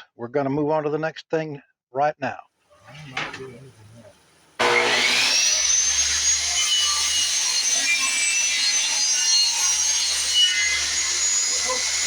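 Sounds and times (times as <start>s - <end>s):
power tool motor whining: 4.6s - 12.0s.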